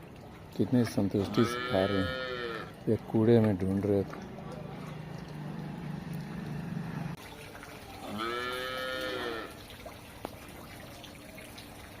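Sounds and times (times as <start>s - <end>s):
calf mooing: 1.2s - 2.8s, 8.0s - 9.6s.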